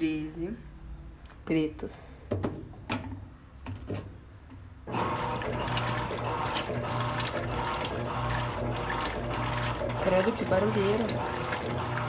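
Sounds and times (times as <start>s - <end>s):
water rushing into washing machine: 4.9s - 12.0s.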